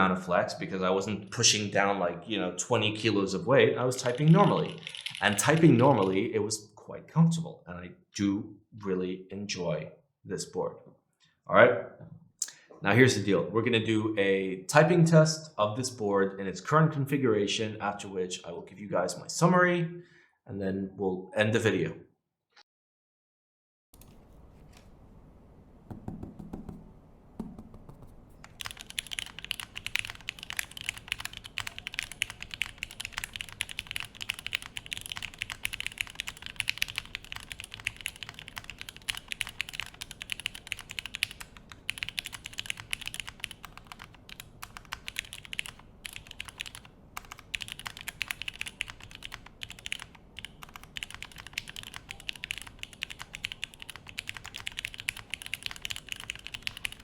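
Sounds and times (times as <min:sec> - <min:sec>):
fast typing on mechanical keyboard: 0:04.0 - 0:06.2, 0:28.4 - 0:57.0.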